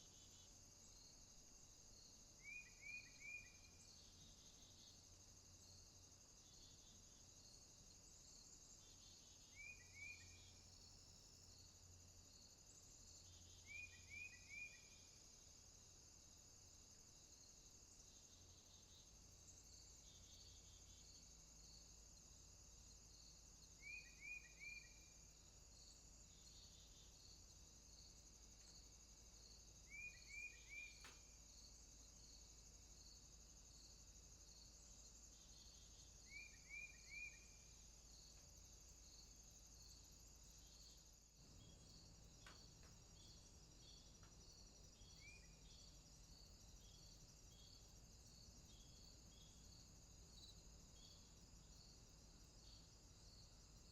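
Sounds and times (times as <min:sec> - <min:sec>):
insects trilling: 0:00.0 - 0:53.9
pulsing insect call: 0:01.9 - 0:05.0, 0:28.6 - 0:31.4, 0:32.9 - 0:53.9.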